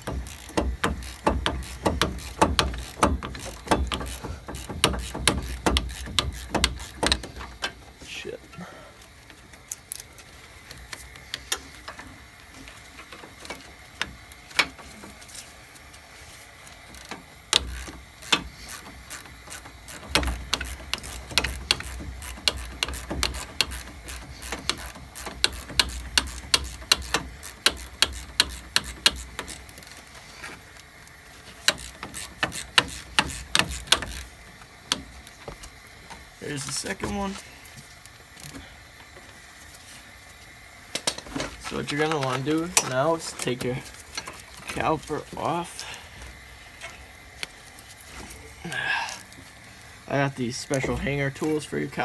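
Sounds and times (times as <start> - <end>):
socket wrench ratchet clicking: 0.0 - 7.8, 16.9 - 30.0, 31.6 - 35.1.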